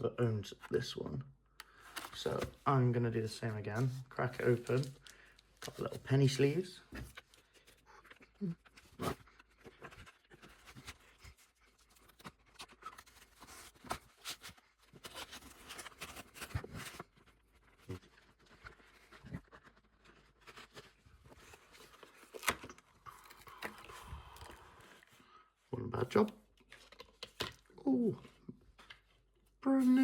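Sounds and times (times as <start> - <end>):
rustling of trading cards: 0.6 - 30.0.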